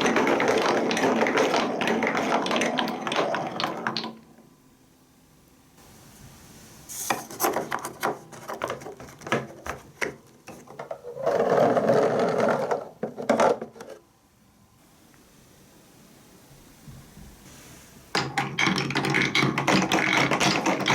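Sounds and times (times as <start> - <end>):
marbles clattering down plastic track: 0.0 - 4.2, 18.2 - 20.9.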